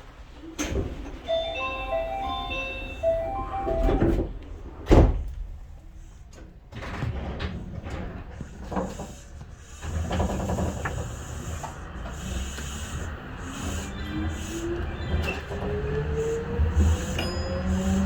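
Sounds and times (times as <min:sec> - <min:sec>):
train running rumble: 0:00.6 - 0:18.0
train motor whine rising: 0:09.8 - 0:18.0.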